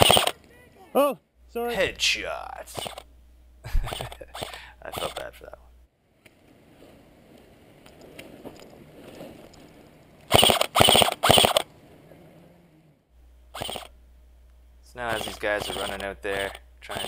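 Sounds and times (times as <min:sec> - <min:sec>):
airsoft rifle bursts: 0:00.0 - 0:00.4, 0:02.7 - 0:03.1, 0:03.8 - 0:05.2, 0:10.3 - 0:11.7, 0:13.6 - 0:13.9, 0:15.1 - 0:17.0.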